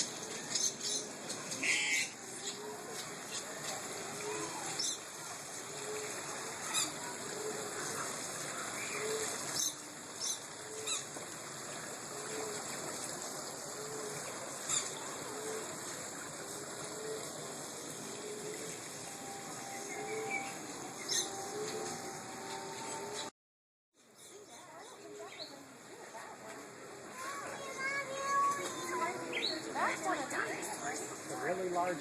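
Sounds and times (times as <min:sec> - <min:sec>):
birds chirping: 0:00.0 - 0:11.1, 0:13.5 - 0:15.8, 0:18.0 - 0:23.3, 0:27.3 - 0:32.0
water trickling: 0:00.0 - 0:23.2, 0:27.0 - 0:32.0.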